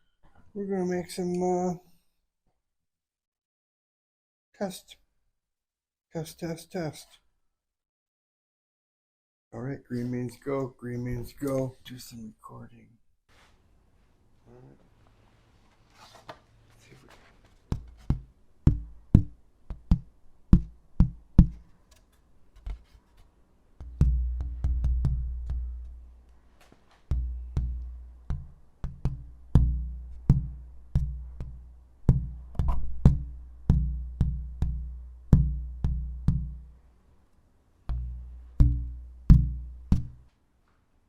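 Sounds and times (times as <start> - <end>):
deep bass notes: 23.8 - 26.2, 27.1 - 36.8, 37.9 - 40.2.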